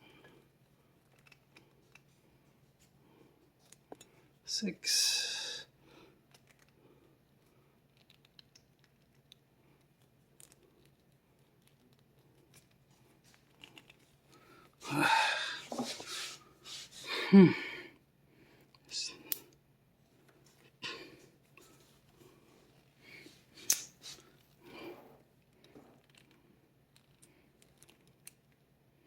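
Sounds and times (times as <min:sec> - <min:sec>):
wordless voice-like sounds: 0:04.5 - 0:05.7, 0:14.8 - 0:17.0.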